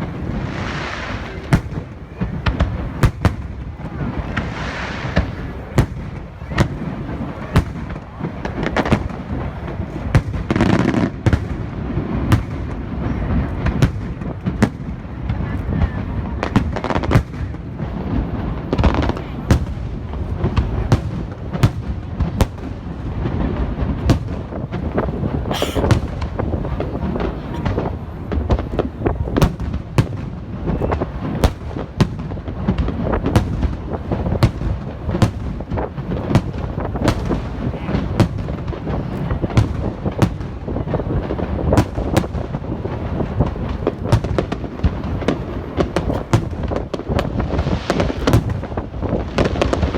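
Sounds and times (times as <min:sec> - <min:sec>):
rising firework hiss: 0:00.0 - 0:12.7.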